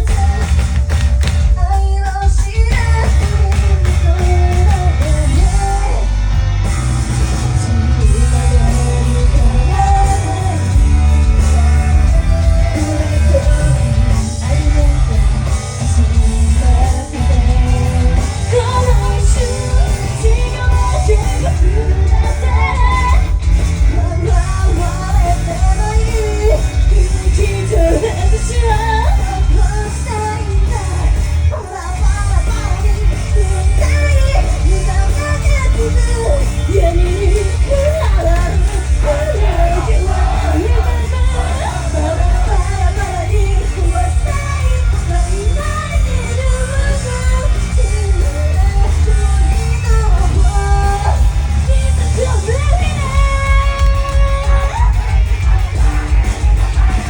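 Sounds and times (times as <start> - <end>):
heavy bass: 0.0 - 57.0
pop music with singing: 0.0 - 57.0.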